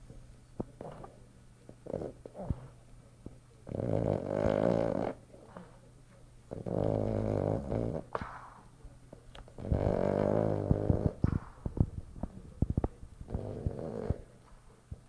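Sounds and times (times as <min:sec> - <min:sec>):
dog snoring: 0:01.8 - 0:02.8, 0:03.6 - 0:05.8, 0:06.5 - 0:08.6, 0:09.5 - 0:14.4.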